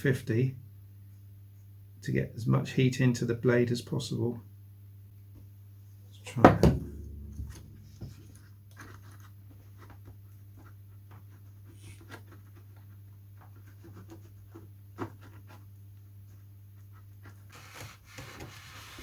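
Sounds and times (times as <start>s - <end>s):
steady low hum: 0.3s - 13.8s.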